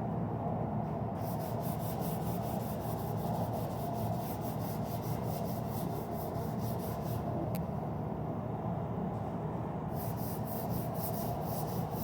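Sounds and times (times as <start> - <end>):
hand sanding with sandpaper: 1.2 - 7.2, 9.9 - 12.0.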